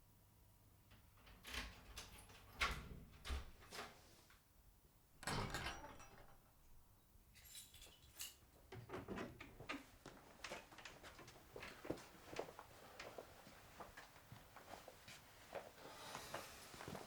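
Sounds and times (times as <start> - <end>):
knocks and clatters of handling: 5.2 - 6.8.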